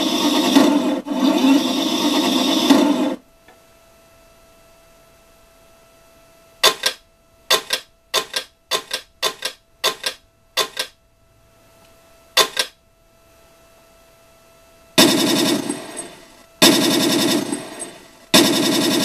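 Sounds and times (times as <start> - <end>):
machine-gun sound effect bursts: 0.0 - 3.2, 6.6 - 11.0, 12.4 - 12.8, 15.0 - 19.0
faint steady hum: 0.0 - 19.0.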